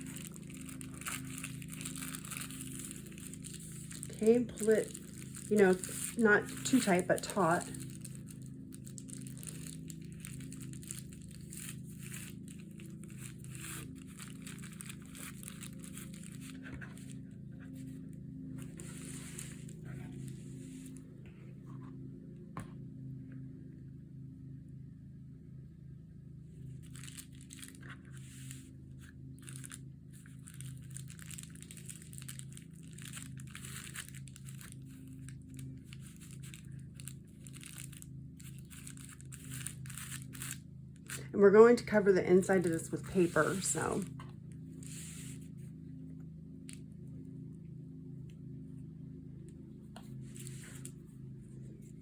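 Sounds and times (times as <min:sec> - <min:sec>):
plastic envelope crinkling: 0:00.0 - 0:18.0, 0:18.6 - 0:21.0, 0:26.8 - 0:45.5, 0:50.0 - 0:51.0
steady low hum: 0:00.0 - 0:52.0.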